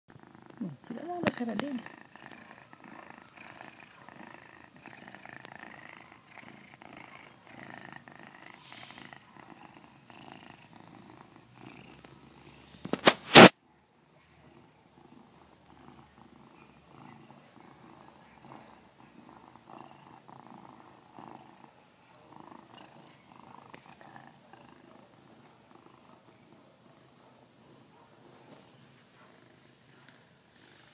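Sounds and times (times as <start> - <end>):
pet snoring: 0.1 - 13.5, 14.4 - 27.3
brief loud noise: 12.9 - 13.6.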